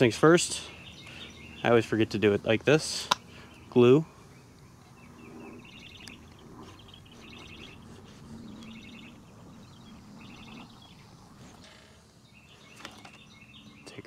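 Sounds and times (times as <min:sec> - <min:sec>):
small bird chirping in trills: 0:00.0 - 0:14.0.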